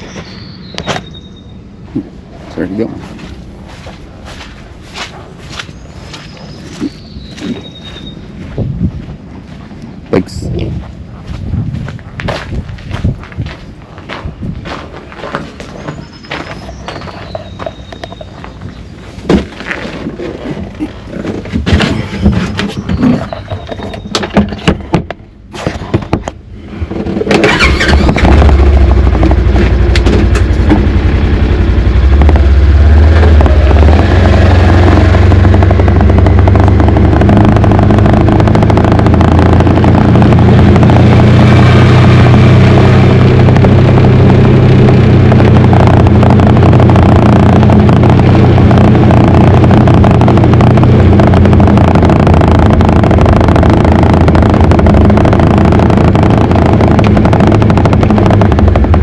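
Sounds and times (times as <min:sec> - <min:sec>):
vehicle engine running: 0:00.0 - 0:59.0
knocks and clicks: 0:20.6 - 0:27.4.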